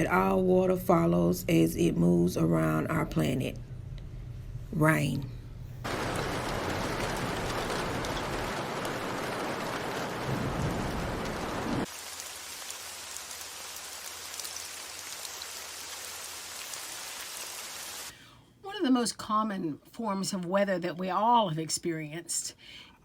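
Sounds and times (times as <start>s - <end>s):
rain falling: 5.8s - 18.1s.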